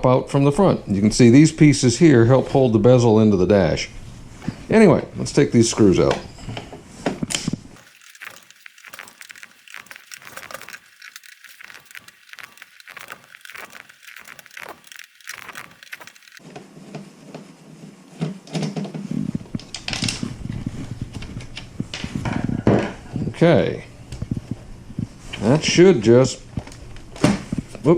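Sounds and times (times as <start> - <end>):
screwdriver clicks and rattles: 7.8 - 16.4.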